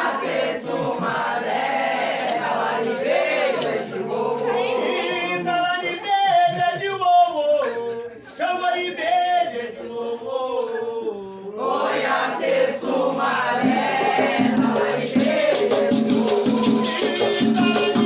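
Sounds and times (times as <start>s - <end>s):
group of voices singing in chorus: 0.0s - 7.0s, 8.8s - 18.0s
lead voice singing: 0.0s - 18.0s
shaker rhythm: 0.2s - 8.4s, 14.6s - 18.0s.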